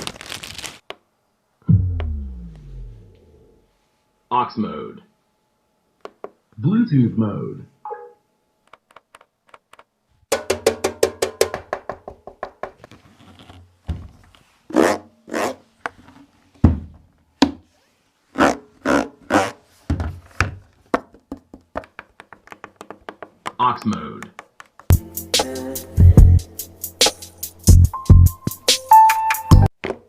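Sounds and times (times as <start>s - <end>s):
music through party speaker: 24.9s - 29.7s.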